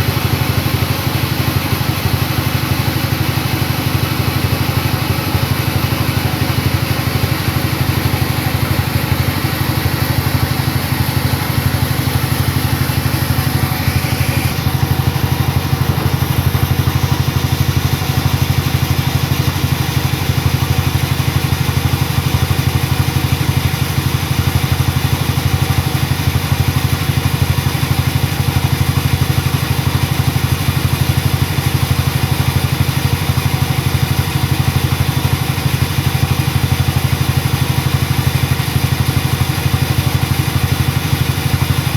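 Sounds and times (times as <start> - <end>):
sawmill engine running: 0.0 - 30.1.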